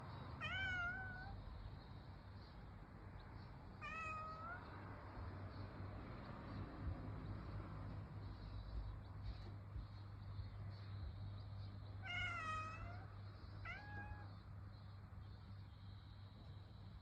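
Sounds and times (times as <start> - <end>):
cat meowing: 0.4 - 1.4, 3.8 - 4.8, 12.0 - 14.4.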